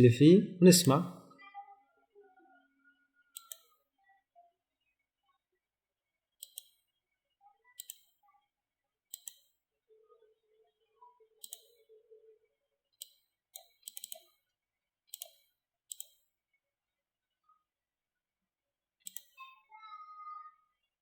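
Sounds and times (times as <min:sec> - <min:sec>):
computer mouse clicks: 0:03.3 - 0:03.8, 0:06.4 - 0:06.9, 0:07.7 - 0:08.2, 0:09.1 - 0:09.6, 0:11.4 - 0:11.8, 0:13.0 - 0:14.4, 0:15.1 - 0:16.3, 0:19.0 - 0:19.4.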